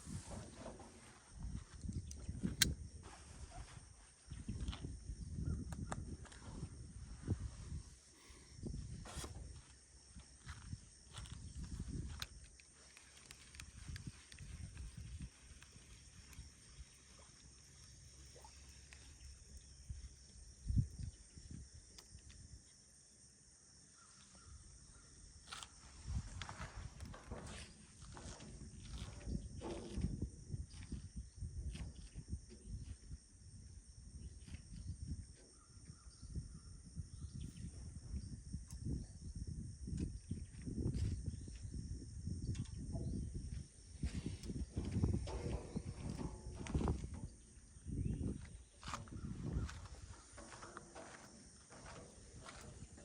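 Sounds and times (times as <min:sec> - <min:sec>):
soft low rumbles: 0:40.9 - 0:53.0.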